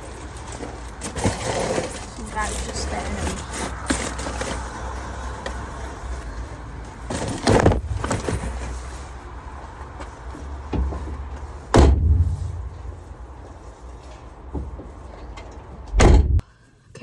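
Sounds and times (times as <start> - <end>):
traffic rumble: 0.0 - 16.5
wind: 0.0 - 17.0
loud door slam: 11.7 - 13.0, 15.9 - 16.4
knocks: 11.8 - 13.0.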